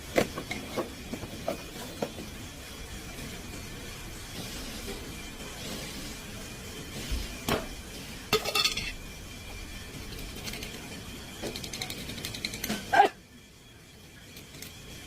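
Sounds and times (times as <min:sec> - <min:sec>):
metal tools clinking: 0:08.3 - 0:09.0.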